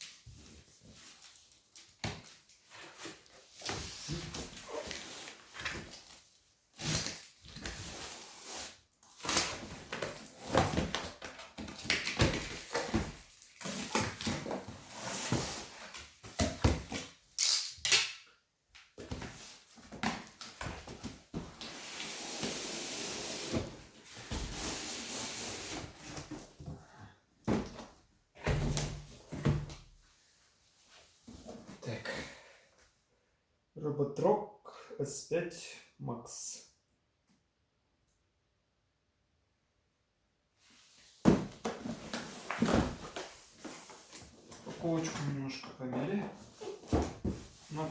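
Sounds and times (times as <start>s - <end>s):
rustling cardboard and wrapping: 0.0s - 17.4s, 19.0s - 29.9s, 40.6s - 47.9s.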